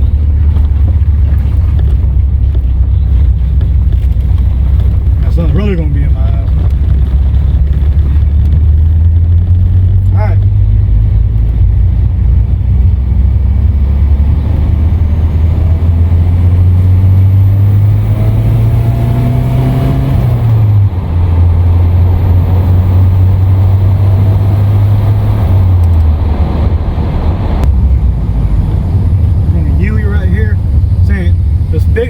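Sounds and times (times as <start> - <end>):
car engine accelerating: 0.0 - 32.0.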